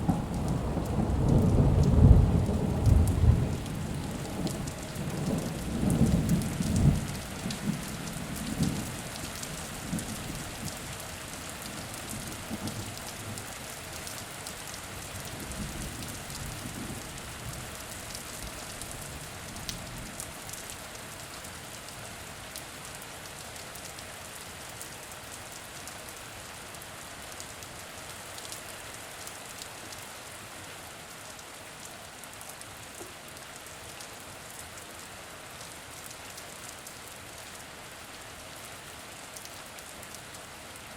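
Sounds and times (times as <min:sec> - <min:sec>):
low rumble of thunder: 0:00.0 - 0:09.0
steady rain falling: 0:00.0 - 0:40.9.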